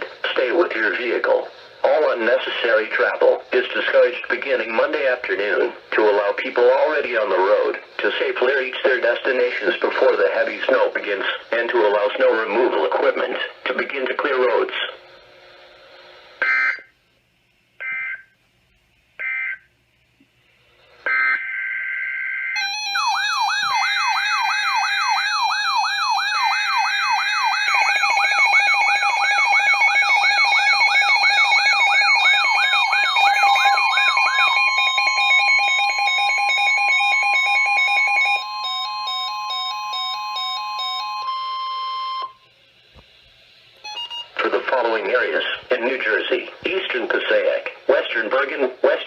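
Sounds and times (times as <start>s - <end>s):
warbling siren: 21.0s - 42.4s
steady warning tone: 21.0s - 42.6s, 43.8s - 47.1s
electronic beeping: 30.4s - 42.4s, 43.8s - 44.4s
data burst squawks: 31.5s - 36.2s.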